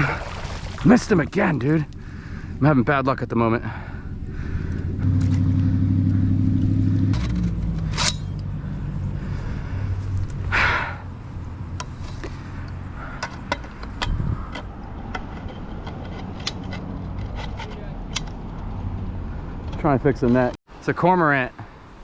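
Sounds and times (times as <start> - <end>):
motor engine humming: 3.9 - 15.2.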